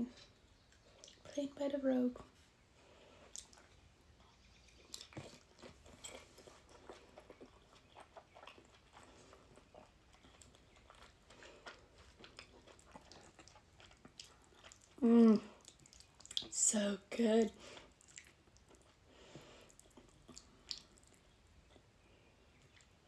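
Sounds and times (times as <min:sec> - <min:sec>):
close-up chewing: 0:00.1 - 0:01.3, 0:02.8 - 0:16.6, 0:17.4 - 0:23.0
mouth clicks and smacks: 0:03.3 - 0:03.8, 0:19.8 - 0:21.2.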